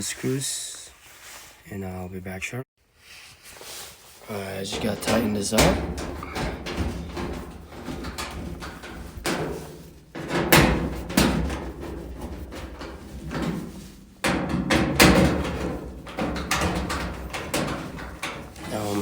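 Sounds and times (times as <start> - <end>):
knocks and clatters of a panel: 4.7 - 19.0.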